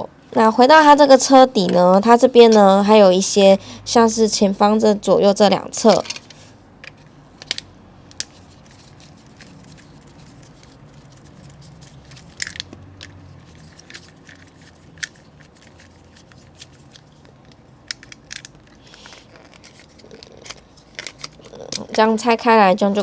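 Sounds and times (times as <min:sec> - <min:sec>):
plastic toy clicks and creaks: 0:05.7 - 0:09.8, 0:11.4 - 0:22.2
plastic crackle: 0:07.4 - 0:22.2.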